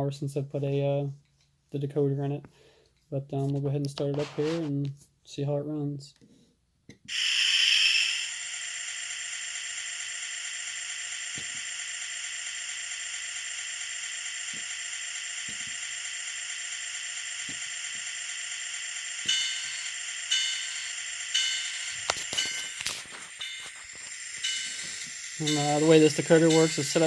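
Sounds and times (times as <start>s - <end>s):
model locomotive engine idling: 7.1s - 27.0s.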